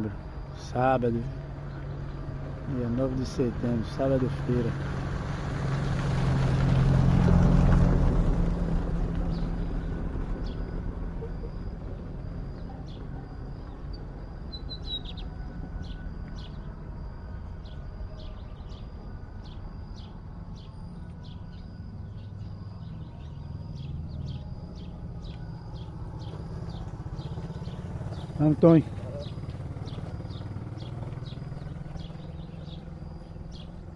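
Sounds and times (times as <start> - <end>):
bird chirping: 9.0 - 33.9.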